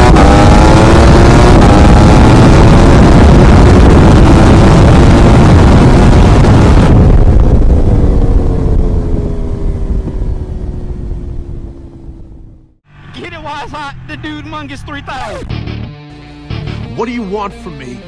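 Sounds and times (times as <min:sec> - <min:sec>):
motorcycle engine running hard: 0:00.0 - 0:12.8
rush of noise: 0:00.0 - 0:15.6.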